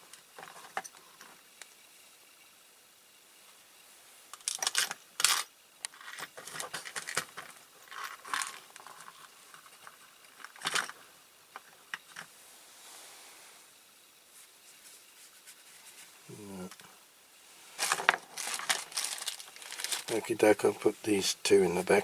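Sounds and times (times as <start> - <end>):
metal parts clinking and rattling: 4.4 - 11.0, 17.8 - 20.1.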